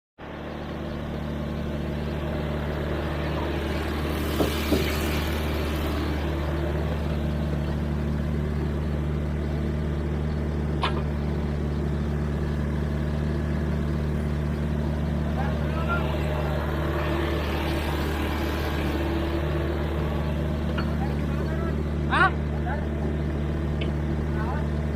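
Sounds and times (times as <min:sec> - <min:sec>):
diesel engine running: 0:00.2 - 0:24.9
sharp knocks: 0:04.3 - 0:05.1.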